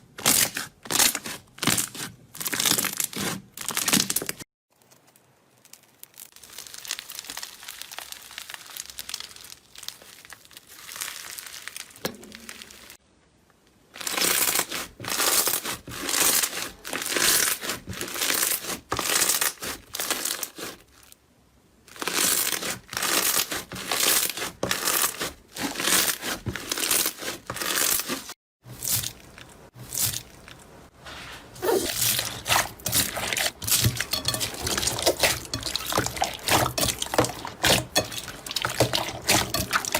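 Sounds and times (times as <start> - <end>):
slime being squished by hand: 0.2 - 13.0.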